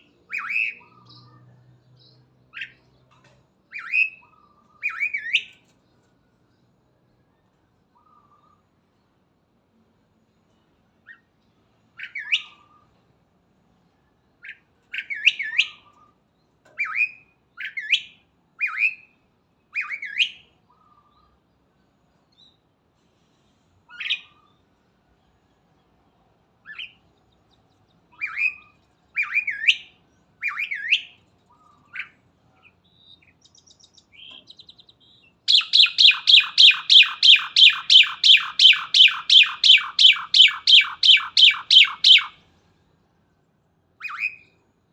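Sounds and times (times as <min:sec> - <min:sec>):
songbird whistled calls: 0:00.3 - 0:01.4, 0:03.7 - 0:05.6, 0:12.0 - 0:12.8, 0:14.4 - 0:15.9, 0:16.8 - 0:19.1, 0:19.8 - 0:20.5, 0:28.1 - 0:32.2, 0:35.5 - 0:42.4, 0:44.0 - 0:44.6
bird chattering: 0:35.5 - 0:42.4.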